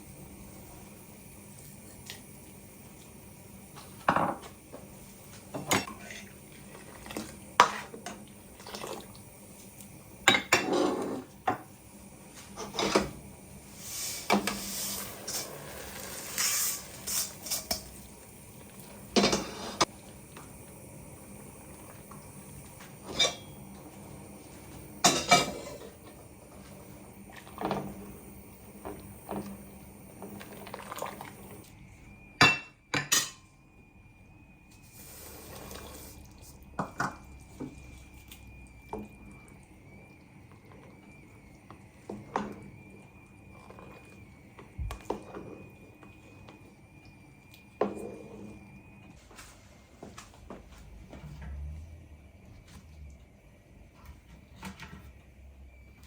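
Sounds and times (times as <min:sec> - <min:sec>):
dishes and utensils clattering: 0:19.2 - 0:19.9, 0:23.0 - 0:23.5, 0:25.0 - 0:25.9.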